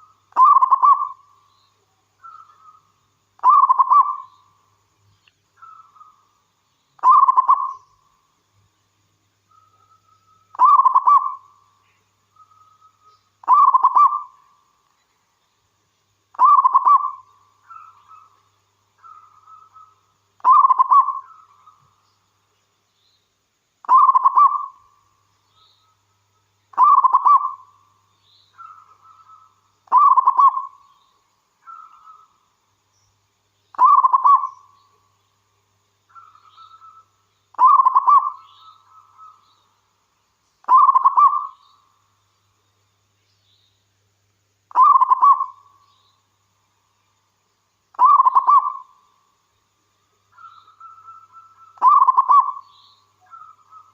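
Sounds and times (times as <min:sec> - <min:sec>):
dove cooing: 0:00.0 - 0:01.2, 0:03.4 - 0:04.3, 0:07.0 - 0:07.7, 0:10.6 - 0:11.4, 0:13.4 - 0:14.3, 0:16.4 - 0:18.3, 0:19.0 - 0:21.5, 0:23.8 - 0:24.8, 0:26.8 - 0:27.7, 0:28.6 - 0:30.8, 0:33.8 - 0:34.6, 0:36.2 - 0:39.4, 0:40.7 - 0:41.6, 0:44.7 - 0:45.6, 0:48.0 - 0:48.9, 0:50.4 - 0:53.9.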